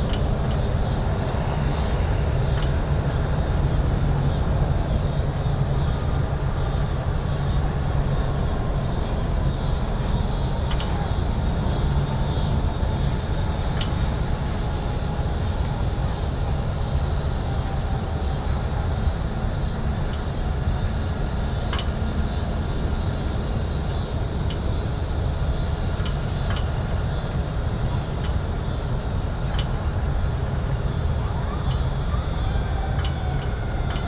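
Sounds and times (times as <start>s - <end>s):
traffic rumble: 0.0s - 34.0s.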